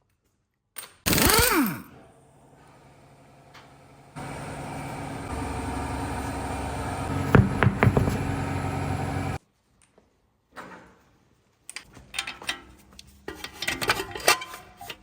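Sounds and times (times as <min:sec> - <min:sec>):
vehicle engine drone: 0:02.5 - 0:09.4
sharp knocks: 0:07.2 - 0:08.6.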